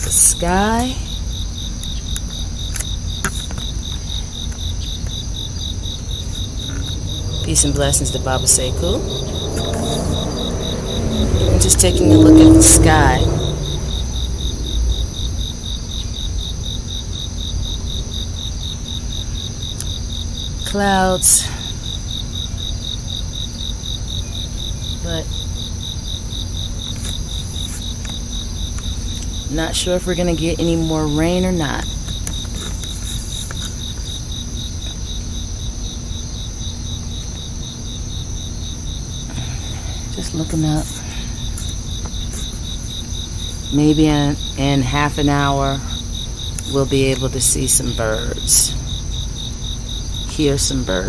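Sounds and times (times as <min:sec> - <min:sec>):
low steady rumble: 0:00.0 - 0:23.1
cricket chirping evenly: 0:00.0 - 0:51.0
high-pitched insect trills: 0:00.0 - 0:51.0.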